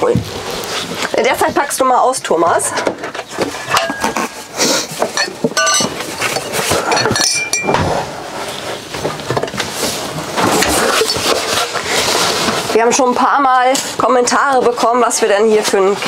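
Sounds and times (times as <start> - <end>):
glassware clinking: 3.7 - 4.3, 5.2 - 7.8
glasses ringing: 5.2 - 6.0, 6.9 - 7.8.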